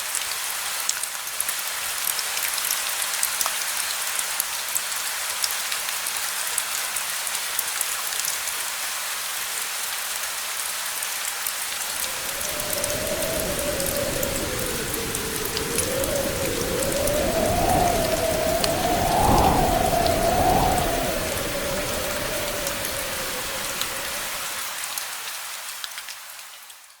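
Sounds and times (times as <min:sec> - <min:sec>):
rain drops pattering: 0:11.4 - 0:27.0
distant thunder rumble: 0:12.0 - 0:24.6.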